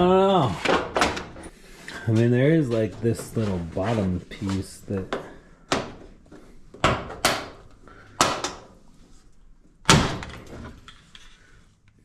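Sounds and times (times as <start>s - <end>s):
appliance parts knocking and clattering: 0.6s - 1.5s.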